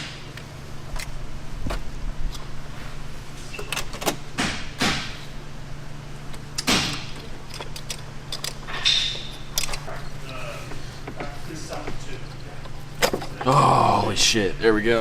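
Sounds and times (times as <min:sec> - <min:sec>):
clicks and knocks of metal and plastic: 0:12.6 - 0:13.5.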